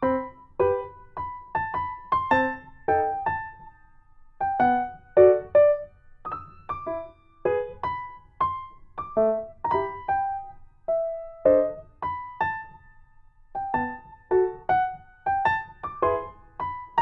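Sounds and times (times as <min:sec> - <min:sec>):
piano notes and chords: 0:00.0 - 0:17.0.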